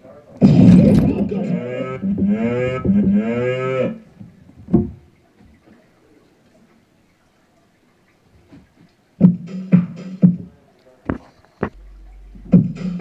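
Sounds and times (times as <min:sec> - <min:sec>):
electronic cow moo: 0:01.2 - 0:04.1.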